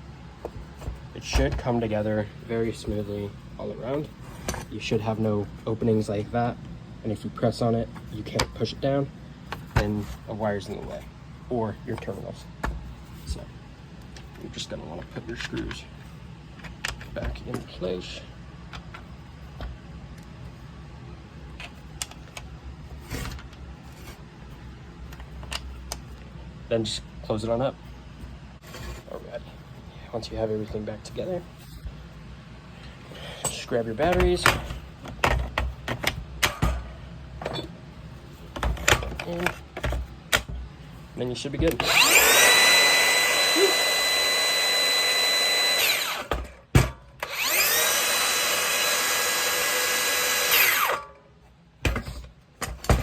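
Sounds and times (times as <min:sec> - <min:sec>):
steady low hum: 0:00.0 - 0:47.5
circular saw motor whining: 0:41.8 - 0:46.4, 0:47.2 - 0:51.0.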